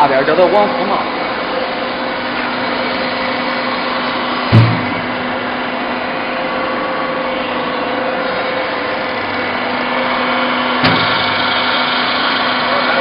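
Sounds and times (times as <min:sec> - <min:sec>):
machine drone: 0:00.0 - 0:13.0
loud thump: 0:04.5 - 0:05.3, 0:10.8 - 0:11.3.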